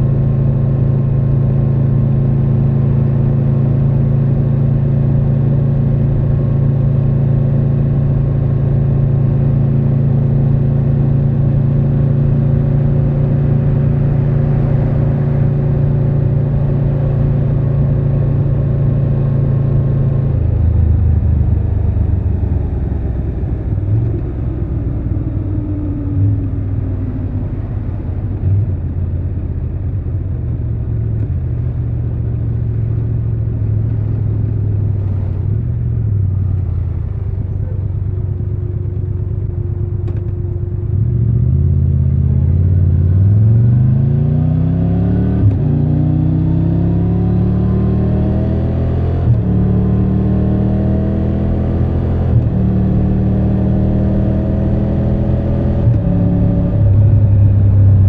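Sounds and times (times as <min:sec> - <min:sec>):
motorcycle engine running: 0:00.0 - 0:43.2.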